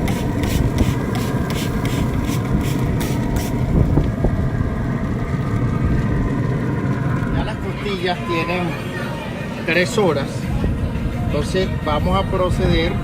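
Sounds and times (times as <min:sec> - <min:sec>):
spray bottle spritzing: 0:00.0 - 0:03.6
steady low rumble: 0:00.0 - 0:13.0.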